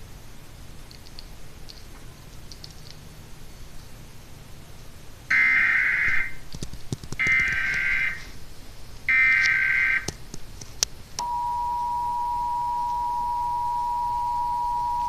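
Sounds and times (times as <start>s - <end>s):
digital header bursts: 5.3s - 6.4s, 7.2s - 8.2s
two-tone attention signal: 11.2s - 15.0s.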